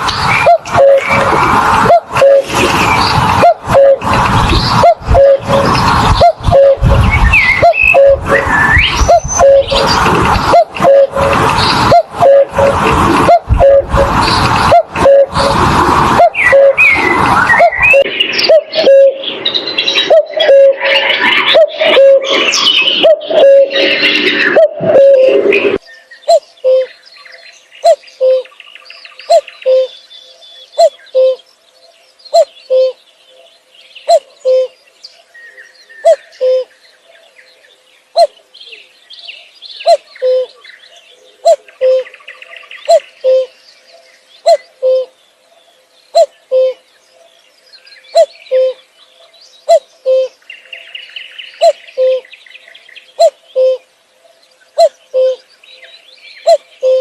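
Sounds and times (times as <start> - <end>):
cuckoo calling: 0.1 - 2.5, 3.4 - 15.6, 16.2 - 19.3, 20.0 - 25.5, 26.2 - 27.0, 27.8 - 28.6, 29.2 - 31.5, 32.3 - 34.8, 36.0 - 36.8, 38.2 - 38.8, 39.8 - 45.2, 46.1 - 47.3, 48.0 - 48.9, 49.6 - 50.9, 51.5 - 53.9, 54.8 - 57.0
small birds chirping: 25.8 - 57.0.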